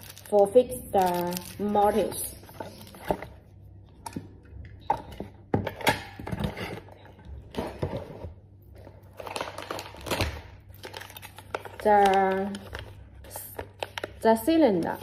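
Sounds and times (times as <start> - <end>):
plastic packaging rustling: 0.0 - 3.4, 6.8 - 15.0.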